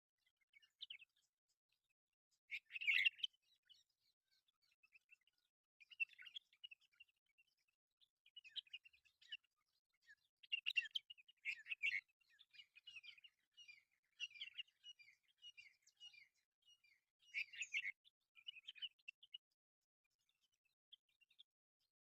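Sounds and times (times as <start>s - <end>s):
small birds chirping: 0.0s - 22.0s.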